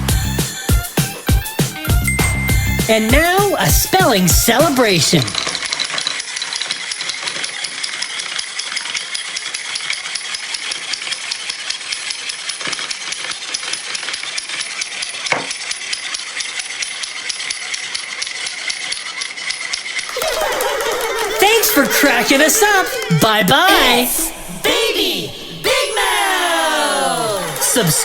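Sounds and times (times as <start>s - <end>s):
fast rattling clicks: 5.2s - 23.1s.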